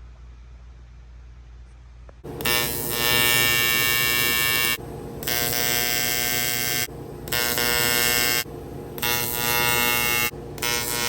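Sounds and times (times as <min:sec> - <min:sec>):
welding arc buzzing: 0:02.2 - 0:11.0.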